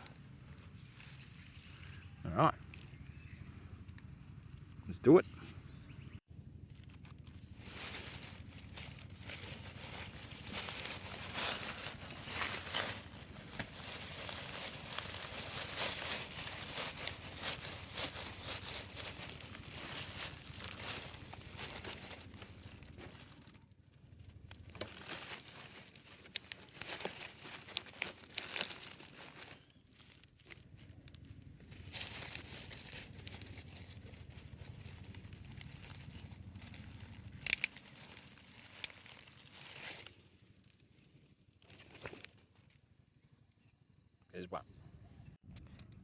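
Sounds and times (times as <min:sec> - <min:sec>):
plastic pipe crinkling: 0:06.6 - 0:42.8.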